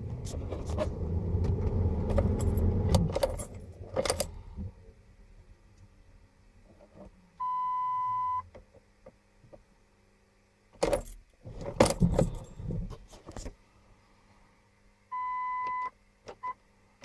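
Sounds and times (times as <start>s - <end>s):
keys jangling: 11.8s - 12.7s.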